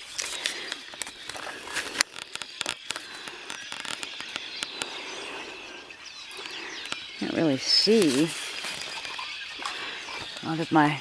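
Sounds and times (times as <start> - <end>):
sharp crackling clicks: 0.0 - 5.2
birds calling from trees: 0.0 - 11.0.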